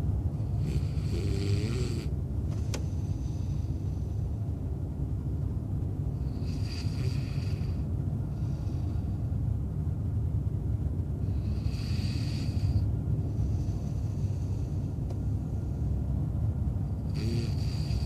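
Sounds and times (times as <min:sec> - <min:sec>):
van low rumble: 0:00.0 - 0:18.0
man snoring: 0:00.6 - 0:02.1, 0:06.2 - 0:09.0, 0:11.3 - 0:14.7, 0:17.1 - 0:18.0.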